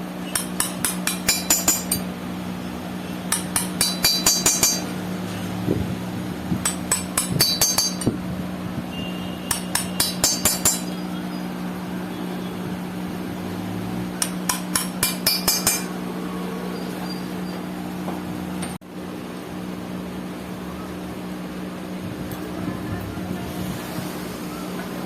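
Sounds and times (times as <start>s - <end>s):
sharp metallic clinks: 6.6s - 8.2s.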